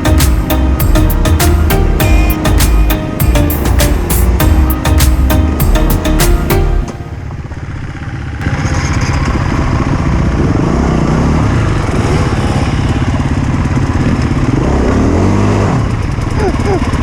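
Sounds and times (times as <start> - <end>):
music: 0.0 - 7.3.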